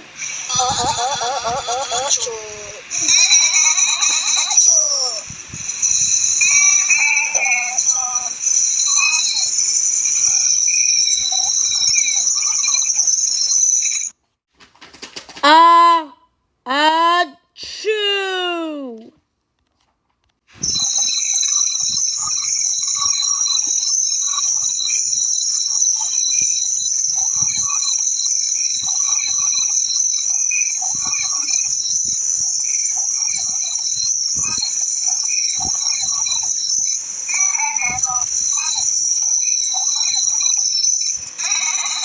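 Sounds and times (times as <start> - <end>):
high-pitched insect chorus: 0.0 - 14.1, 20.6 - 42.0.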